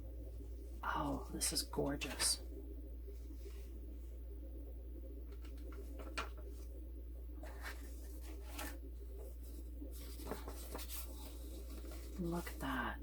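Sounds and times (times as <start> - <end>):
steady low hum: 0.0 - 13.0
paper rustling and sliding: 7.4 - 12.8.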